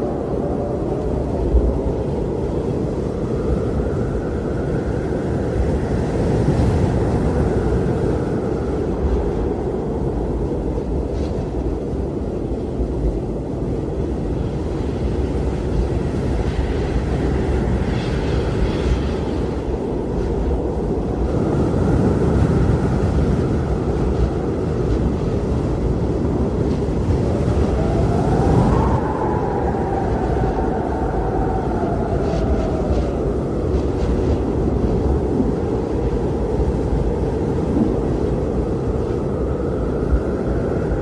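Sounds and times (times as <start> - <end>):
blizzard wind rumbling: 0.0 - 41.0
faint wind whistling: 0.0 - 41.0.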